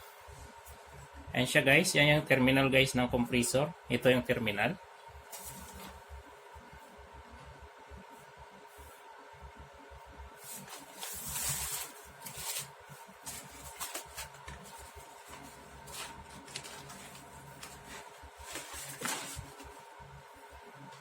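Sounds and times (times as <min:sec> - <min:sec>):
faint steady whine: 0:00.0 - 0:21.0
rustles and clicks of handling: 0:05.3 - 0:06.0, 0:10.4 - 0:19.9.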